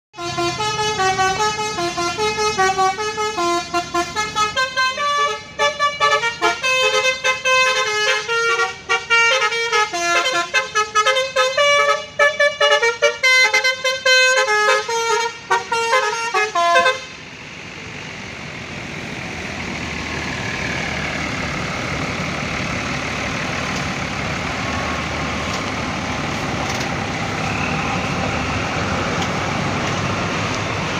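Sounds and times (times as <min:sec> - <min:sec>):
bus trumpet horns playing melody: 0:00.2 - 0:17.3.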